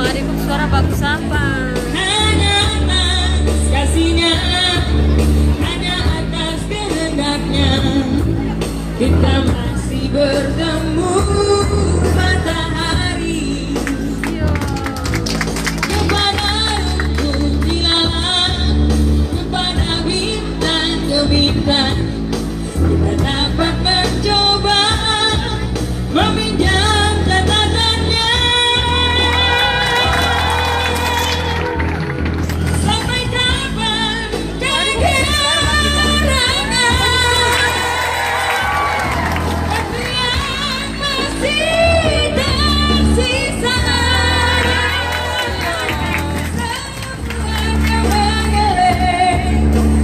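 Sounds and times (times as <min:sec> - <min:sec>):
backing music: 0:00.0 - 0:50.0
band with bass and guitar: 0:00.0 - 0:50.0
person singing with vibrato: 0:32.9 - 0:38.1.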